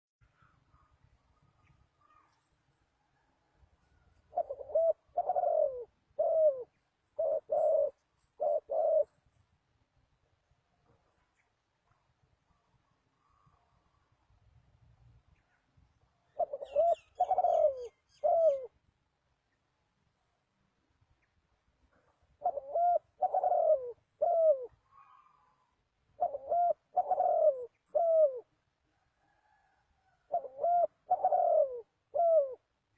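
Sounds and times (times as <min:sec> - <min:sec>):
faint bird call: 0:00.2 - 0:09.2, 0:15.3 - 0:18.8, 0:22.4 - 0:32.6
dove cooing: 0:04.2 - 0:09.2, 0:16.3 - 0:18.8, 0:22.0 - 0:28.6, 0:29.2 - 0:32.7.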